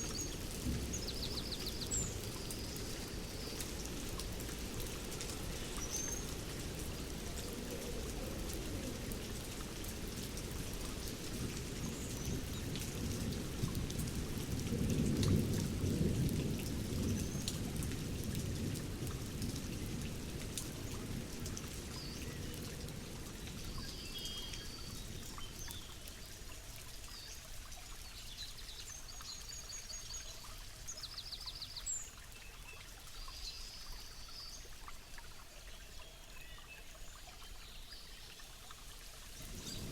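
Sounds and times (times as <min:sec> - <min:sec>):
steady rain: 0:00.0 - 0:39.9
thunder rolling: 0:39.5 - 0:39.9.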